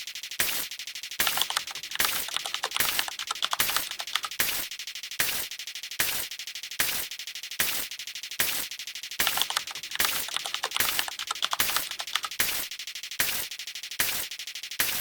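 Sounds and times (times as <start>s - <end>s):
rattling clicking sound effects: 1.2s - 4.6s, 9.2s - 12.6s.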